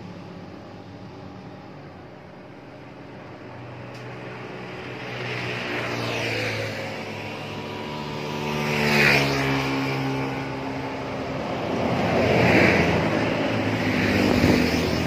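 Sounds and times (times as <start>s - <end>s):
another vehicle approaching: 0.0s - 15.0s
heavy vehicle passing: 4.2s - 15.0s.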